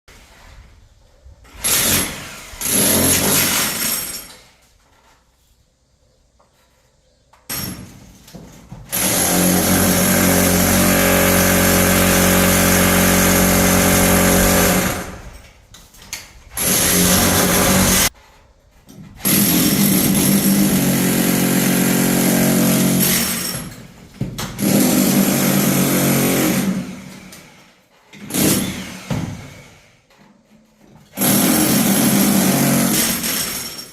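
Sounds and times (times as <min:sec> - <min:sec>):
power tool breaking masonry: 0:01.6 - 0:04.4, 0:08.9 - 0:15.4, 0:16.6 - 0:18.1, 0:19.2 - 0:27.5, 0:28.2 - 0:29.7, 0:31.2 - 0:33.9.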